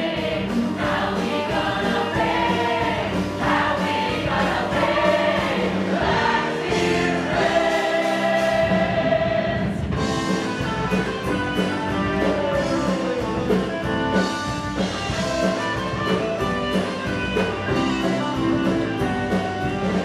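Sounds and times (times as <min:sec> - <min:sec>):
drum kit beat: 0:00.0 - 0:20.0
electric guitar: 0:10.0 - 0:20.0.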